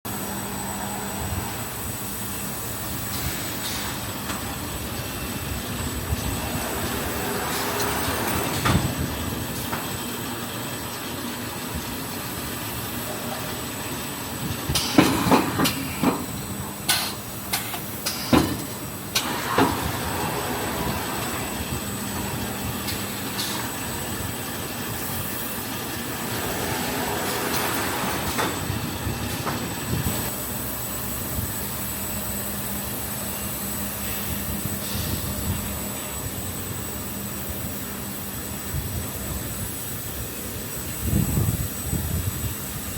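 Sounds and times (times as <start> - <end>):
packing machine humming: 0.1 - 42.9.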